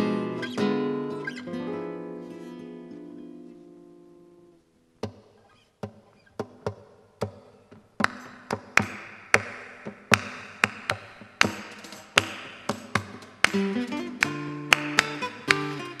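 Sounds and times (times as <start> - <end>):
acoustic guitars: 0.0 - 16.0.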